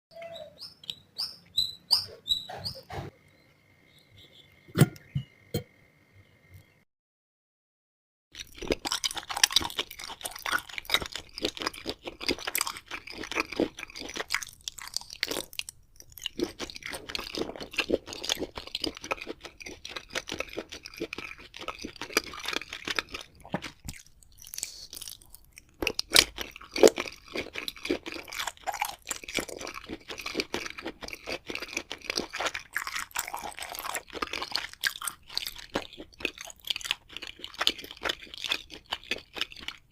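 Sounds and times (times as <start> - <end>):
crunchy bites: 8.4 - 39.9
wet chewing: 8.4 - 39.9.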